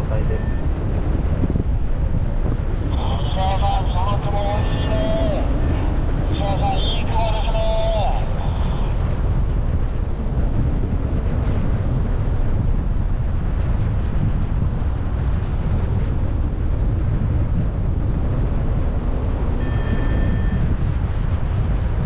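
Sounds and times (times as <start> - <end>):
strong wind on microphone: 0.0 - 22.0
electronic beep: 0.3 - 0.7, 19.6 - 20.7.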